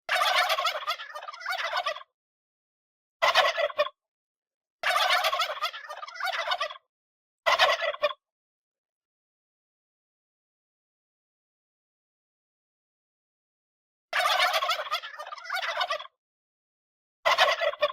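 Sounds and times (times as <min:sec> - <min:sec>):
turkey gobbling: 0:00.1 - 0:02.1, 0:03.2 - 0:04.0, 0:04.8 - 0:06.8, 0:07.5 - 0:08.2, 0:14.2 - 0:16.1, 0:17.3 - 0:17.9.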